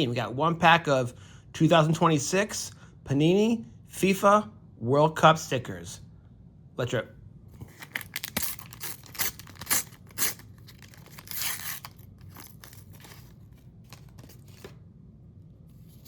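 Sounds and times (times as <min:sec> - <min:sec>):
wrapper tearing: 0:07.6 - 0:14.7
wrapper rustling: 0:07.6 - 0:14.8.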